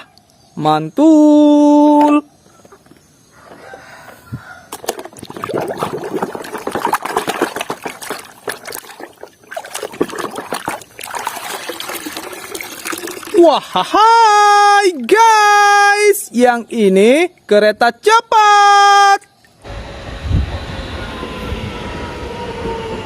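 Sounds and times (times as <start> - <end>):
water splashing and trickling: 4.7 - 13.9, 19.2 - 19.6.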